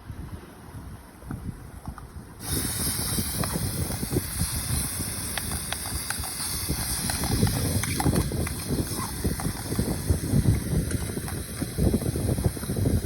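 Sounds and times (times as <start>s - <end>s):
wind buffeting the microphone: 0.0s - 13.0s.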